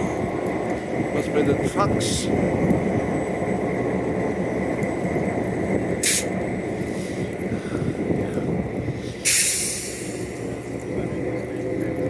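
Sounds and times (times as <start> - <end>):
steady low rumble: 0.0 - 12.0
steam locomotive hiss: 6.0 - 6.3, 9.0 - 10.6.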